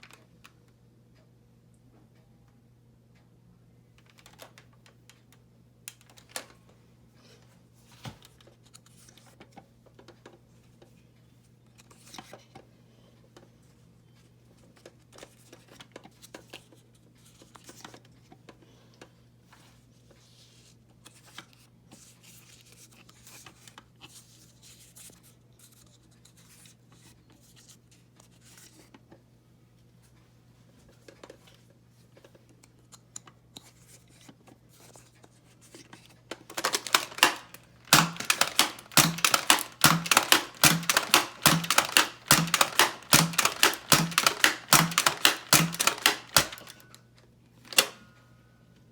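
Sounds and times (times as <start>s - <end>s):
plastic clicks: 36.3s - 47.0s, 47.7s - 48.1s.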